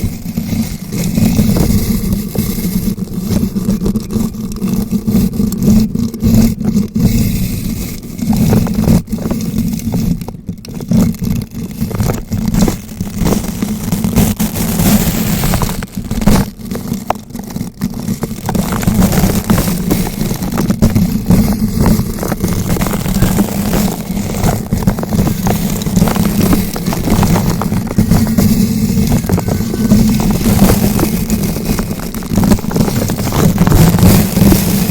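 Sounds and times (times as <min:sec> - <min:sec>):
brush scratching against microphone: 0:10.9 - 0:34.9.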